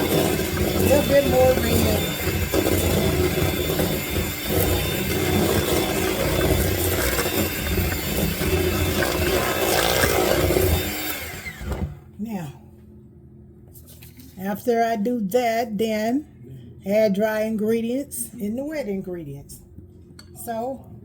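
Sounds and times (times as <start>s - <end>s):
electric hand mixer running: 0.0s - 12.0s.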